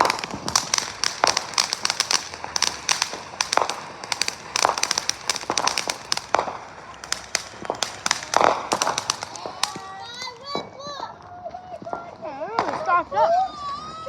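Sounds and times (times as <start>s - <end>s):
fireworks cracking and popping: 0.0s - 14.0s
loud fireworks bangs: 0.0s - 14.0s.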